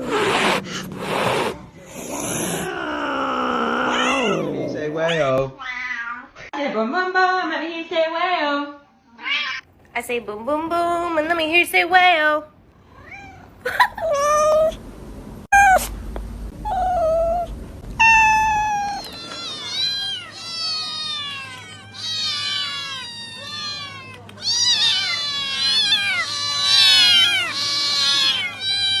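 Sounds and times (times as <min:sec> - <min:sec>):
cats meowing: 0:02.1 - 0:06.5, 0:16.7 - 0:29.0.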